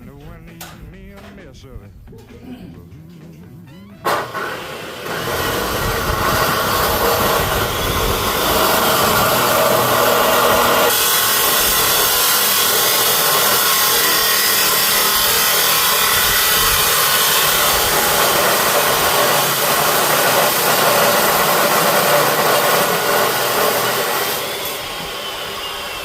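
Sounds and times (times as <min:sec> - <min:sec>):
angle grinder cutting: 0:04.0 - 0:26.0.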